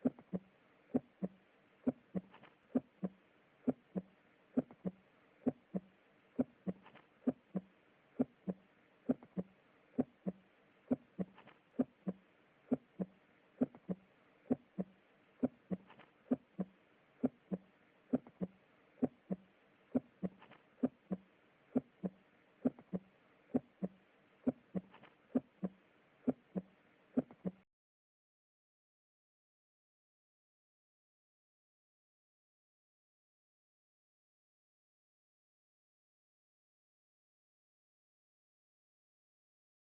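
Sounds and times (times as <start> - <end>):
heartbeat through stethoscope: 0.0 - 27.6.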